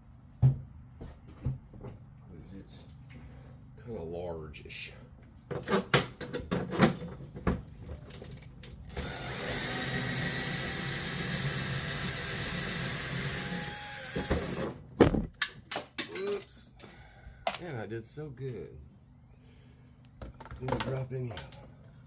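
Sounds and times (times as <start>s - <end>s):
power drill running: 8.9s - 15.4s.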